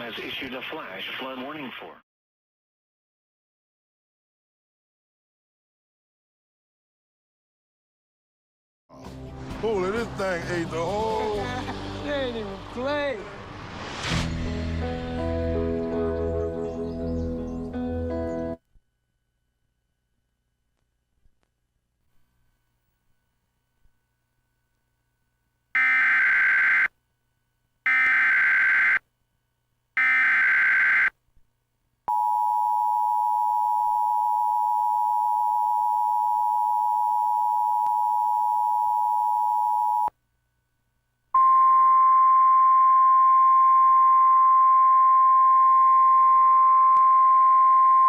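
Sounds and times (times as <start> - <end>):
digital header code screeches: 30.0 - 31.1.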